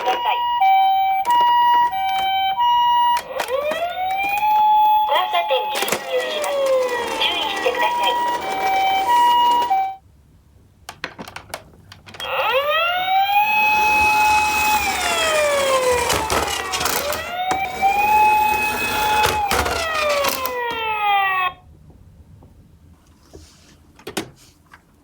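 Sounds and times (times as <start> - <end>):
electronic wailing siren: 0.0 - 10.0, 12.2 - 21.6
toy cars clicking on cardboard: 3.1 - 5.0, 5.6 - 9.7, 13.3 - 21.0.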